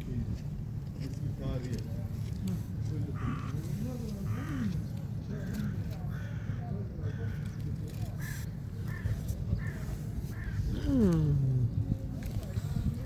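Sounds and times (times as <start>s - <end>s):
crow cawing: 6.1s - 7.4s
low voice: 10.6s - 13.0s.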